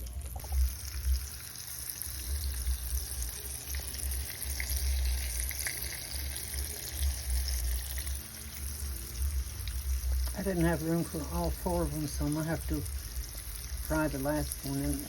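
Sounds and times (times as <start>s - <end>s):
meat sizzling in hot oil: 0.0s - 15.0s.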